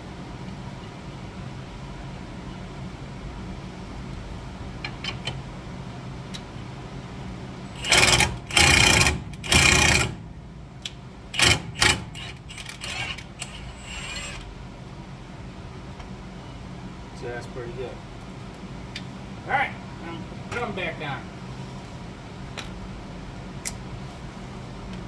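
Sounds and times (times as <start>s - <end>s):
impact wrench hammering: 7.8s - 10.2s, 11.3s - 14.4s.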